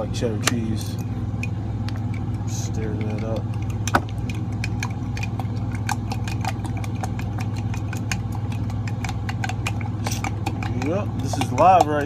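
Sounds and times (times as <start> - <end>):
truck engine idling: 0.0 - 12.0
fork stirring eggs in mug: 1.4 - 12.0.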